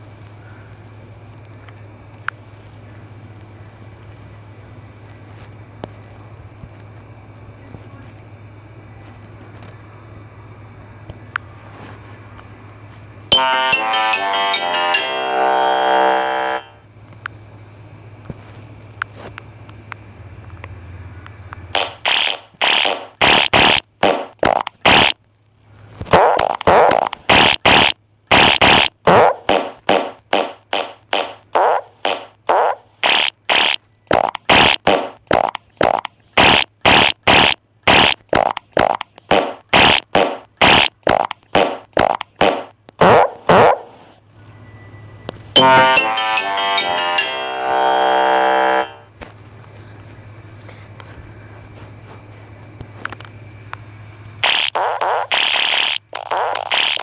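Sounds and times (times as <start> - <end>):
fart sounds: 21.8 - 25.2, 26.0 - 44.1, 54.4 - 57.0.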